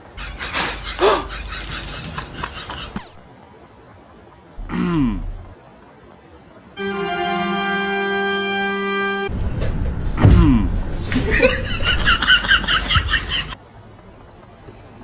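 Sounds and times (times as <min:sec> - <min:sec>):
held organ-like chord: 0:06.8 - 0:09.3.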